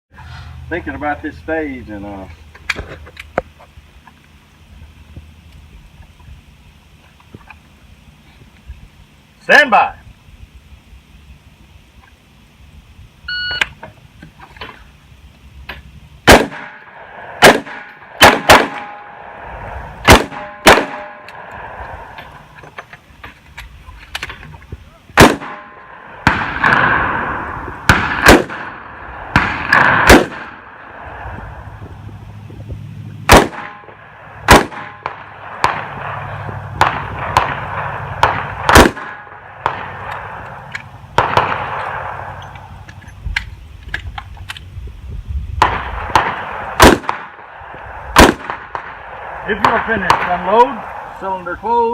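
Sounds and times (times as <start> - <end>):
shot timer beep: 13.3 - 13.7
revolver gunshots: 16.2 - 22.4, 25.2 - 31.7, 33.2 - 42.8, 45.6 - 51.2.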